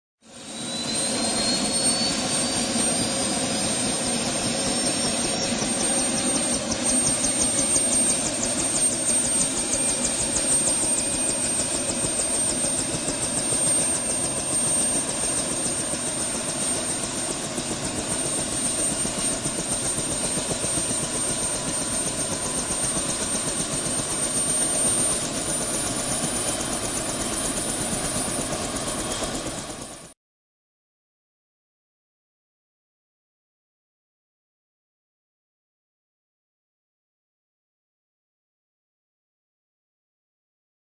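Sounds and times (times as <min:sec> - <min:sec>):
helicopter turbine whine: 0:00.2 - 0:30.2
rotor blades beating: 0:02.9 - 0:30.1.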